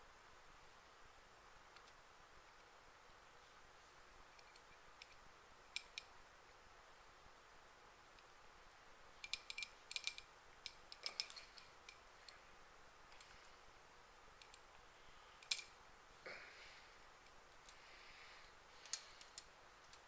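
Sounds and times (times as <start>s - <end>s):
metal parts and tools clicking: 9.2s - 12.0s, 15.4s - 15.8s.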